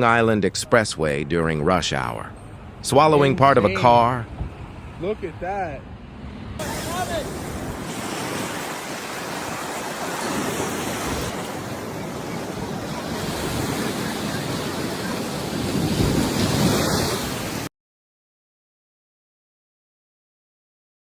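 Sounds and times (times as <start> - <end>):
wind buffeting microphone: 6.6 - 17.7.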